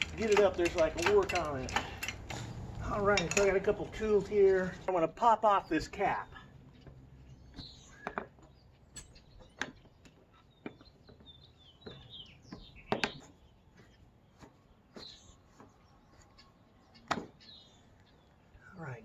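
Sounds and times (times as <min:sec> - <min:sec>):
hand tools clicking and tapping: 0:00.0 - 0:05.0, 0:06.8 - 0:15.8
birds chirping: 0:00.0 - 0:19.0.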